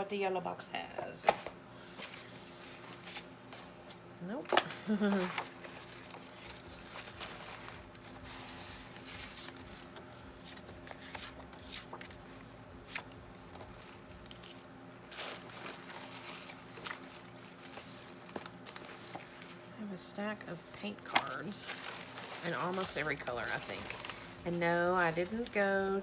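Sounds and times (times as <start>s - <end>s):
paper rustling and tapping: 21.0s - 26.0s.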